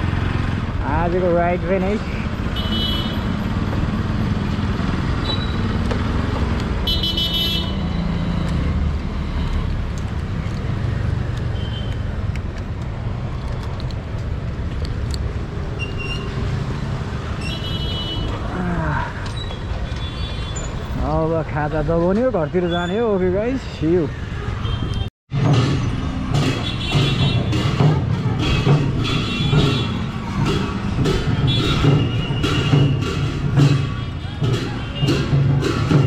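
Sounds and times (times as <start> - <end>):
motorcycle engine and road rumble: 0.0 - 21.0
vehicle horn toots: 2.6 - 3.3, 6.8 - 7.8.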